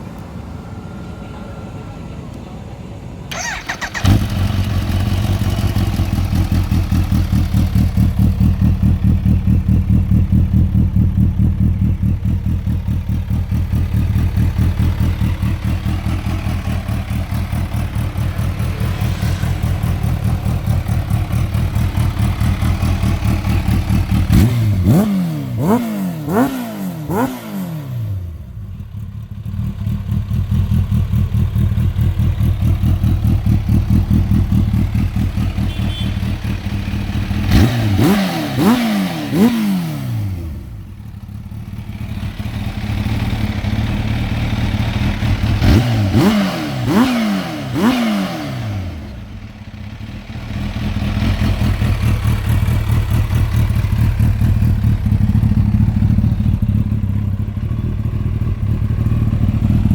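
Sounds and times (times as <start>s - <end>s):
motorcycle engine throttle blips: 3.3s - 59.9s.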